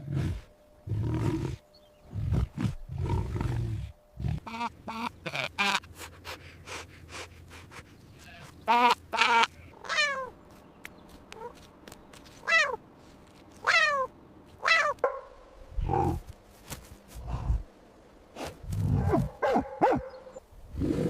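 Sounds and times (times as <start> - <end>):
cat meowing: 13.6 - 15.0.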